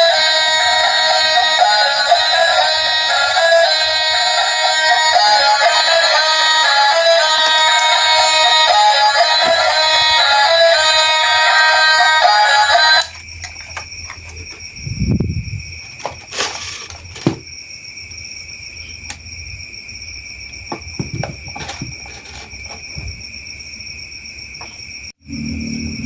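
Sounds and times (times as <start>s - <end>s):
high-pitched whine: 0.0s - 26.0s
toy train pieces clicking: 16.2s - 17.1s.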